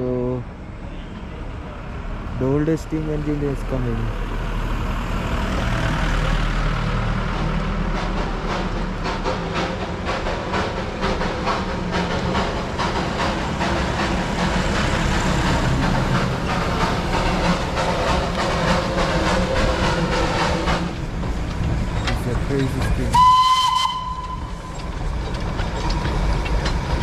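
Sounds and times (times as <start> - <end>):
steam locomotive chuffing beats: 6.2 - 27.0
steam hissing: 8.2 - 22.0.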